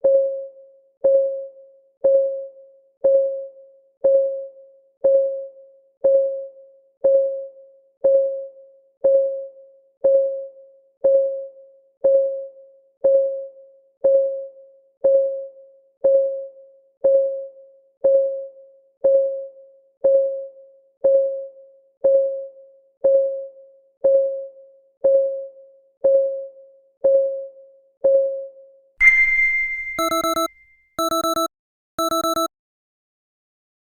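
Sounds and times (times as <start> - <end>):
clock ticking: 30.0 - 32.5.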